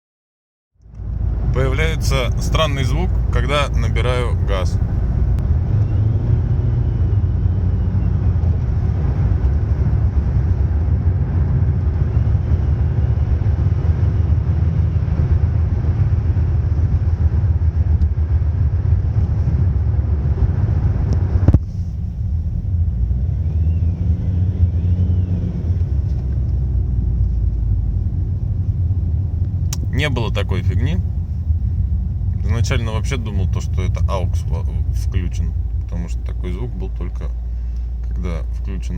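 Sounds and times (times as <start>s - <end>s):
diesel engine rumbling: 0.8s - 38.9s
faint whistle rising and falling: 5.7s - 8.3s, 23.1s - 25.9s.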